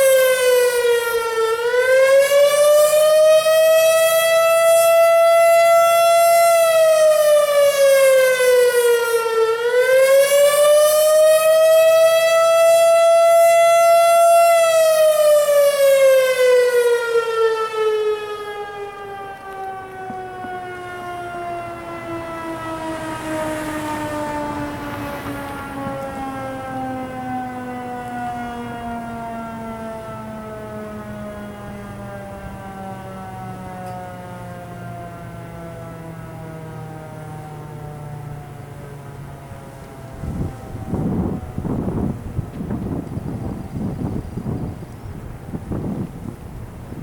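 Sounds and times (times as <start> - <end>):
outdoor warning siren wailing: 0.0 - 47.0.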